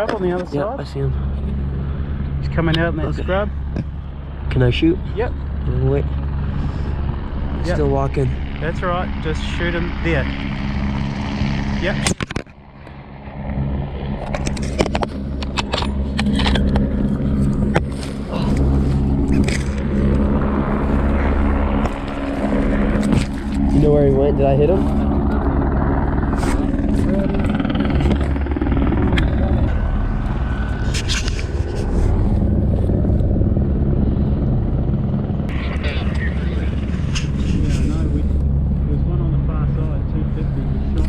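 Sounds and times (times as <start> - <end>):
helicopter rotor and engine drone: 0.0 - 41.0
steady low hum: 0.0 - 41.0
sharp clicks and rattles: 12.0 - 12.6, 14.2 - 17.9, 18.6 - 20.4.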